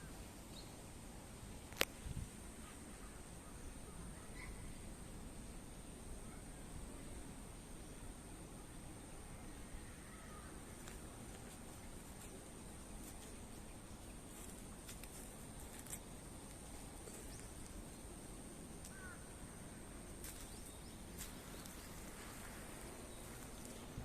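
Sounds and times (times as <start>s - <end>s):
steady high-pitched whine: 0.0s - 24.0s
bird chirp: 20.3s - 24.0s.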